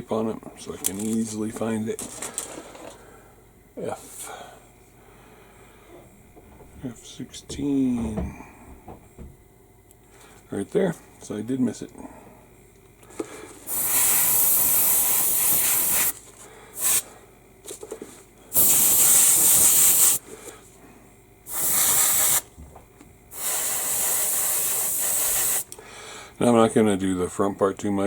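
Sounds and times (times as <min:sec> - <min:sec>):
airbrush spraying hiss: 0:13.7 - 0:16.2, 0:16.8 - 0:17.0, 0:18.6 - 0:20.2, 0:21.5 - 0:22.5, 0:23.3 - 0:25.7.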